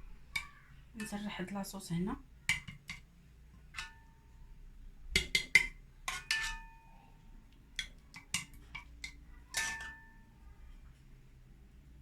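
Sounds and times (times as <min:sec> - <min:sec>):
spoon clinking against dish: 0:05.2 - 0:06.9, 0:07.8 - 0:10.2.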